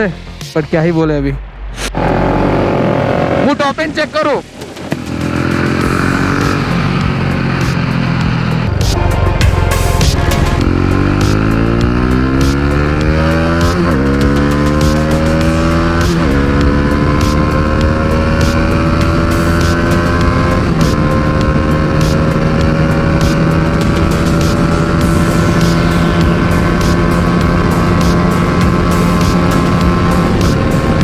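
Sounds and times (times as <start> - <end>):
motorcycle accelerating hard: 1.8 - 31.0.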